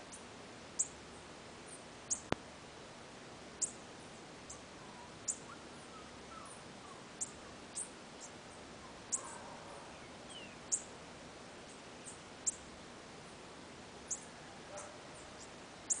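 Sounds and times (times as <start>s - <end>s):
bird chip calls: 4.5s - 8.3s, 9.0s - 10.9s.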